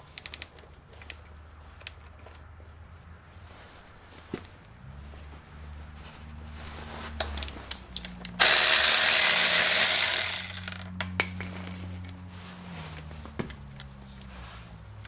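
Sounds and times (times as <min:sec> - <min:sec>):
sharp clicks of tool handling: 0:00.1 - 0:02.5, 0:07.2 - 0:12.2
cordless ratchet running: 0:08.4 - 0:10.9.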